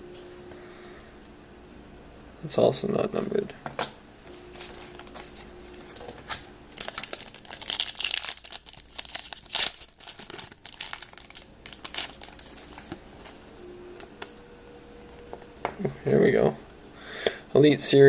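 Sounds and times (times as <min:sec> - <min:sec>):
wrapper crinkling and tearing: 0:04.5 - 0:13.4.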